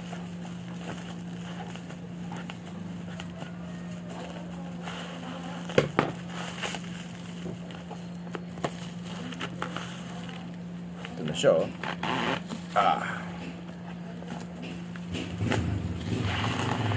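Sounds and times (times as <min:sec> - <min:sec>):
wrapping crackling and rustling: 0:00.0 - 0:13.0
steady low hum: 0:00.0 - 0:16.9.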